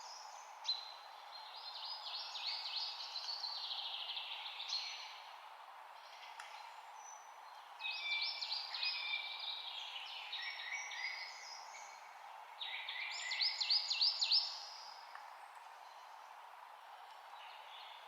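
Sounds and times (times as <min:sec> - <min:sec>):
songbirds chirping: 0:00.0 - 0:18.0
steady background hiss: 0:00.0 - 0:18.0.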